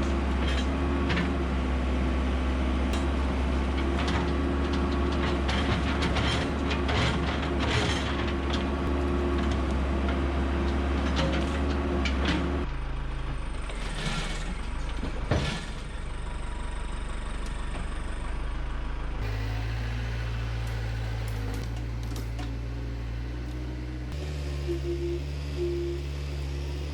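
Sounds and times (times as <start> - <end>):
backhoe diesel engine running: 0.0 - 26.9
machine clatter and rattles: 2.9 - 12.7.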